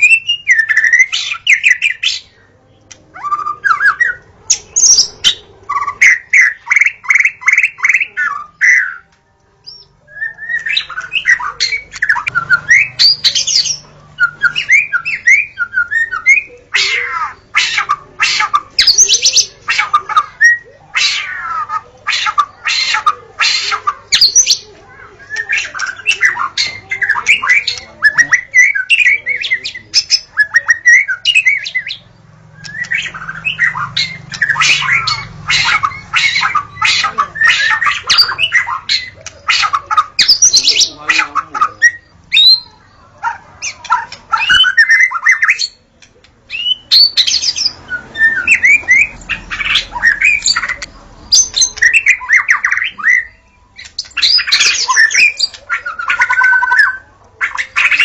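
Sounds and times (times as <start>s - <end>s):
bird singing whistled phrases: 0.0s - 2.3s, 9.7s - 17.2s, 24.1s - 40.9s, 41.8s - 42.8s, 43.8s - 45.8s, 46.5s - 58.0s
harsh chattering bird calls: 0.0s - 58.0s.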